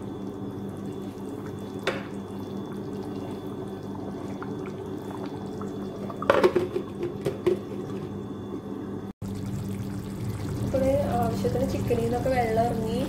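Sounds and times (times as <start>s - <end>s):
curry bubbling in a pan: 0.0s - 6.4s, 9.2s - 12.4s.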